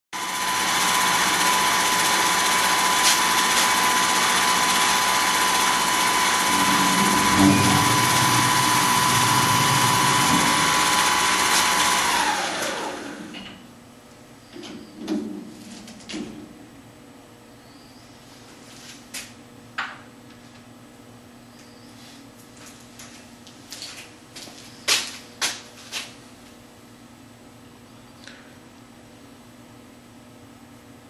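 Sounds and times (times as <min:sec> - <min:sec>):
lathe spindle whine: 0:00.2 - 0:13.5
low hum: 0:04.3 - 0:12.2.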